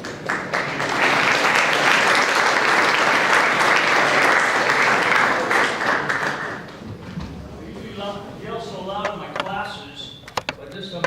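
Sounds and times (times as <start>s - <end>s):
audience clapping in a hall: 0.0s - 7.2s.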